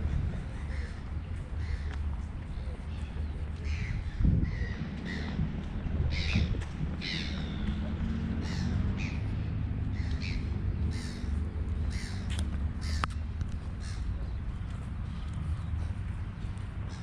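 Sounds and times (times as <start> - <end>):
steady low rumble: 0.0 - 17.0
bird cawing: 8.4 - 13.2.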